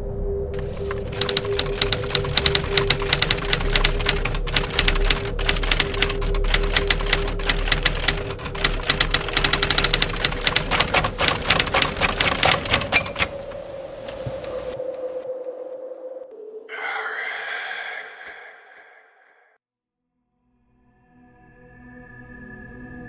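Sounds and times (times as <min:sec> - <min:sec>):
typewriter keys typing: 0:00.6 - 0:14.8.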